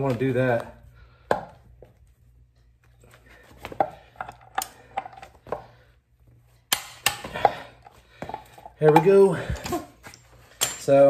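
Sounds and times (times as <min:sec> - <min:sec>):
metal tools clinking and knocking: 0:08.3 - 0:11.0.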